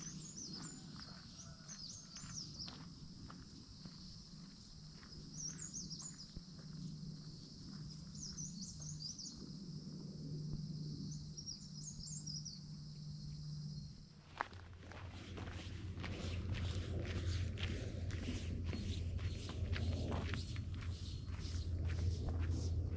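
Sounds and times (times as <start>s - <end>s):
small birds twittering: 0.0s - 2.9s, 3.8s - 6.7s, 7.3s - 9.6s, 11.0s - 13.9s, 18.6s - 22.7s
steady low hum: 0.0s - 22.9s.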